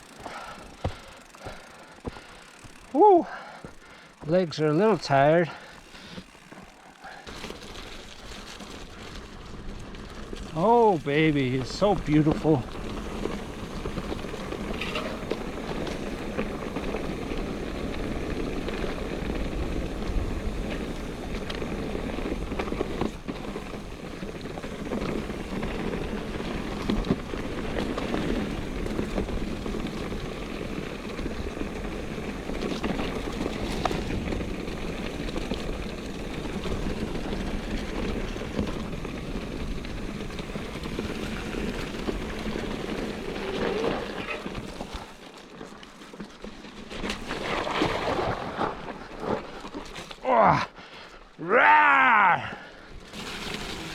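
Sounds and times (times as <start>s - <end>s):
bike knocks and rattles: 0.0s - 2.9s, 11.4s - 19.3s
bike tyre and drivetrain noise: 0.0s - 53.9s.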